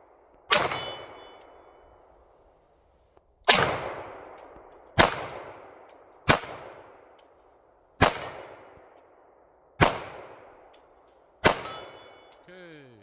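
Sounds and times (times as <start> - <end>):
pistol shots with echo: 0.1 - 1.8, 3.5 - 7.2, 8.0 - 10.8, 11.4 - 12.4
steel targets ringing: 0.5 - 1.8, 11.5 - 12.5.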